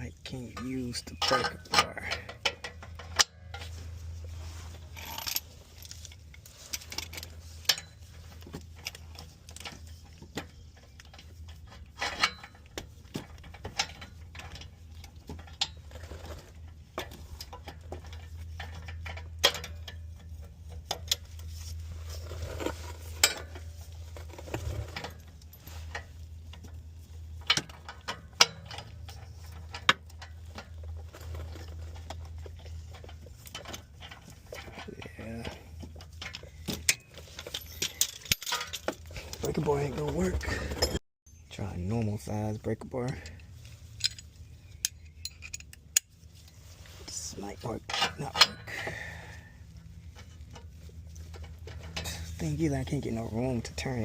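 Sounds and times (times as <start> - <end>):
metal hand tools clinking: 34.5 - 41.4.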